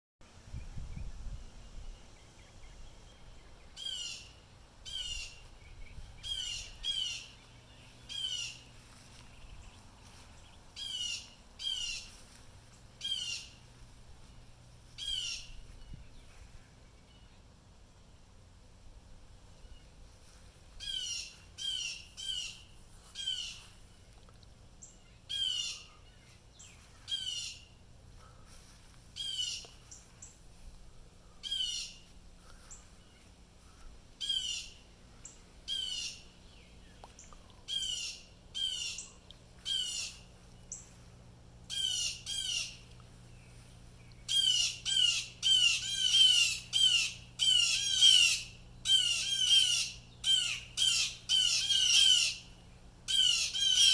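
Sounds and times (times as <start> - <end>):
blue jays harsh calls: 41.7 - 42.8, 44.3 - 52.5, 53.1 - 53.9.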